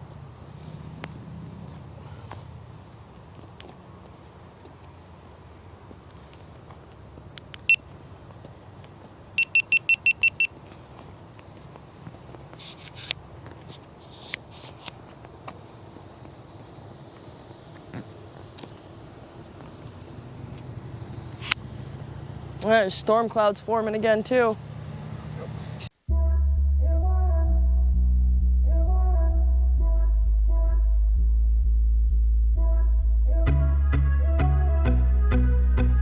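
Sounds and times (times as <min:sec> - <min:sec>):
high electronic beeps: 0:09.4 - 0:10.5
low steady rumble: 0:26.1 - 0:36.0.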